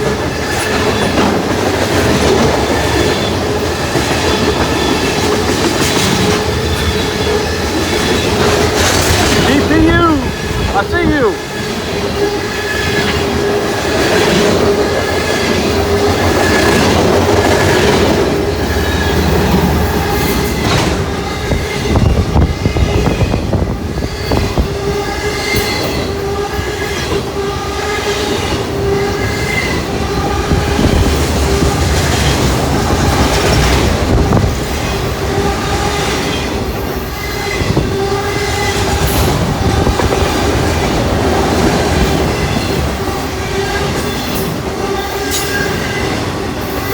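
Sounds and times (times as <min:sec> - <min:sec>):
wheels clacking on rail joints: 0:00.0 - 0:09.5
freight train rushing past: 0:00.0 - 0:46.9.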